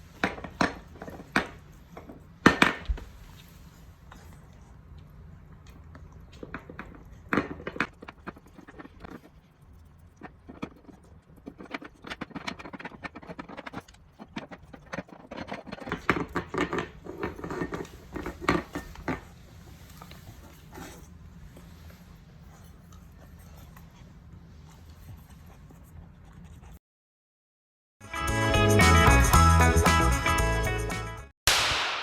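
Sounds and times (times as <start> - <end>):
dog licking porcelain: 4.2 - 18.4.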